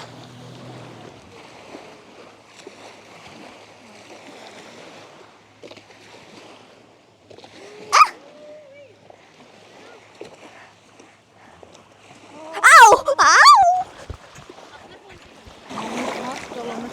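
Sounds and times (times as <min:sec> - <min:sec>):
small waves washing on shore: 0:00.0 - 0:16.9.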